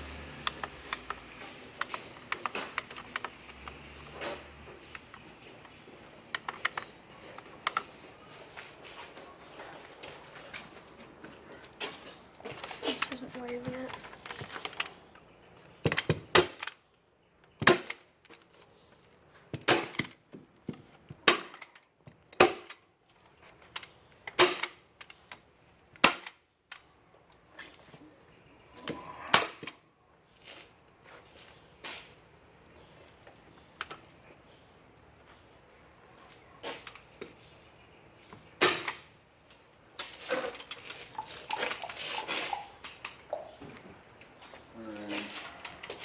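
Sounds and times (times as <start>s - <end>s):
sharp snaps and knocks: 11.8s - 16.8s, 17.4s - 18.7s, 19.5s - 26.9s.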